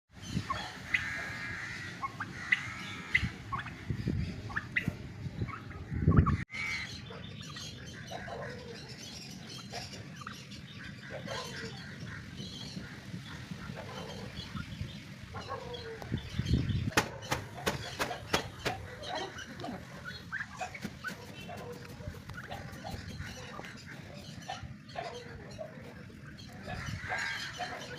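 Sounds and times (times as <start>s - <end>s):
birds chirping: 0.1s - 27.9s
wind on microphone: 0.2s - 6.5s, 11.0s - 27.4s
sharp clicks: 16.9s - 18.8s.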